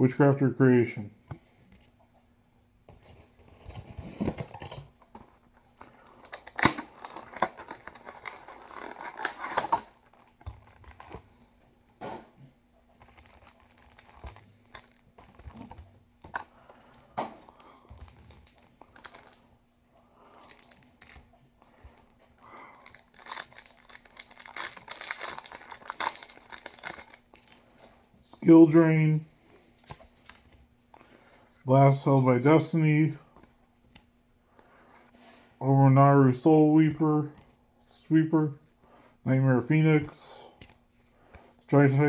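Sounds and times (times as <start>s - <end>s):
card pack wrapper tearing and crinkling: 6.1s - 11.2s, 13.0s - 16.4s, 17.9s - 19.4s, 20.2s - 21.2s, 22.4s - 27.7s.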